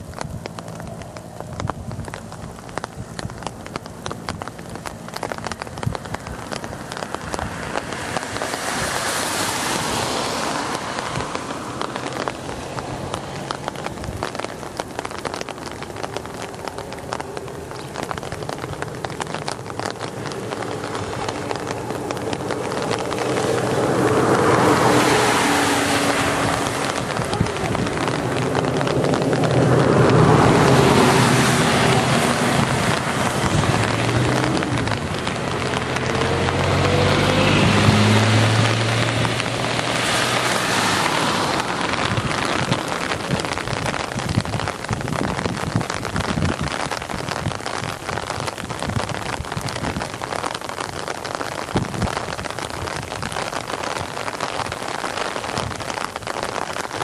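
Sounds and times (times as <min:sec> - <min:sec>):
steady engine hum: 0:00.0 - 0:44.0
torrential rain pouring: 0:00.0 - 0:57.0
wind gusts hitting microphone: 0:00.0 - 0:57.0.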